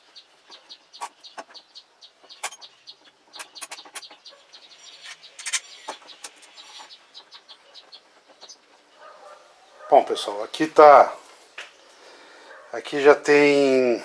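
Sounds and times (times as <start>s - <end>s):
small bird chirping: 0.0s - 10.0s.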